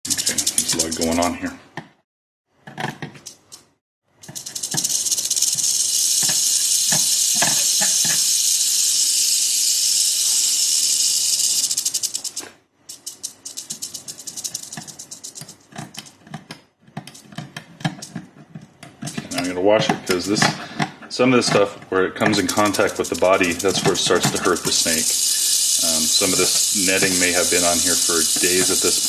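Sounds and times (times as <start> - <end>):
rattlesnake rattling: 0.0 - 1.3, 4.2 - 16.2, 22.3 - 29.0.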